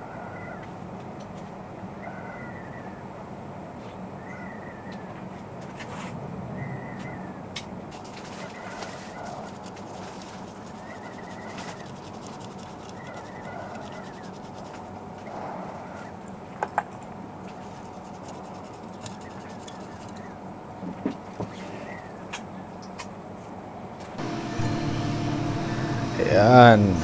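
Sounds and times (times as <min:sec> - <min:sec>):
machine humming: 0:24.2 - 0:27.0.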